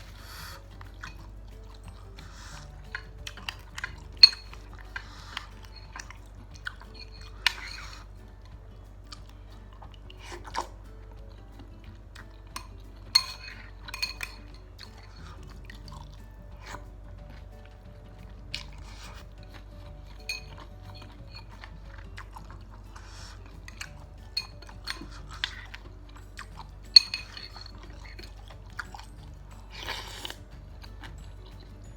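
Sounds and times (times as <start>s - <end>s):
chewing: 0.0s - 31.9s
faint music: 0.0s - 31.9s
steady low hum: 0.0s - 31.9s.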